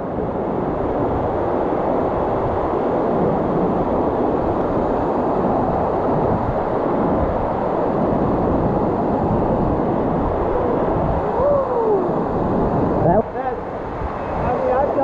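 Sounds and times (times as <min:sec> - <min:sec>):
waterfall roaring: 0:07.6 - 0:15.0.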